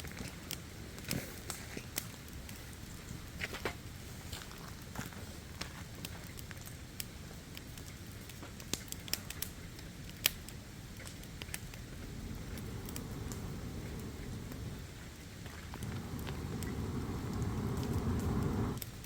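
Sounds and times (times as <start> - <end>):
campfire crackling: 0.0 - 19.0
sharp pops of fire: 6.0 - 19.0
steady low rush: 11.3 - 18.8.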